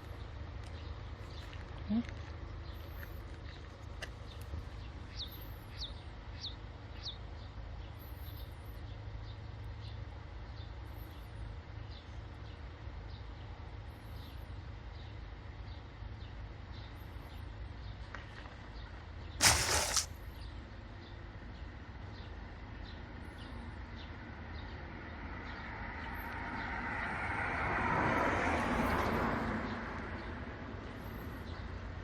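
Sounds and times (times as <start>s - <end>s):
small birds chirping: 0.0s - 10.0s
loud brief burst of noise: 19.4s - 20.1s.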